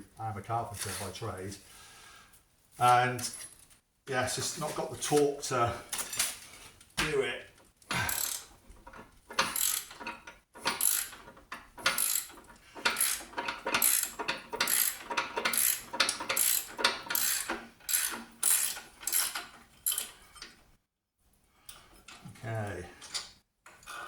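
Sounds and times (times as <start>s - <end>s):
ratchet wrench clicking: 8.1s - 8.5s, 9.3s - 20.1s.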